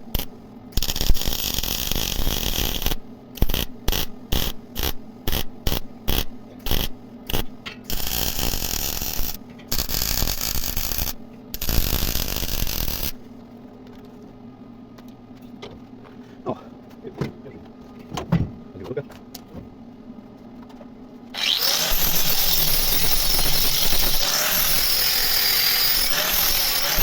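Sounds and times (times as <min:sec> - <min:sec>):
arc welding bursts: 0:00.1 - 0:13.2, 0:21.4 - 0:27.0.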